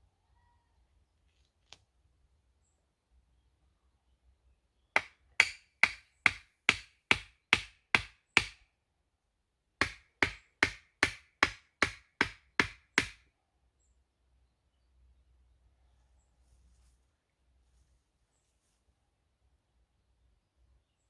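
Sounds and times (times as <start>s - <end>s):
tool knocking on wood: 5.0s - 8.6s, 9.8s - 13.2s.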